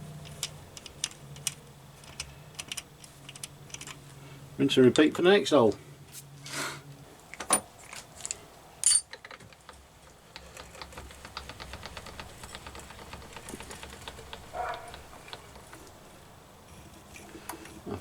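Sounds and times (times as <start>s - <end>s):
hand-cranked mechanism ticking: 9.6s - 15.9s.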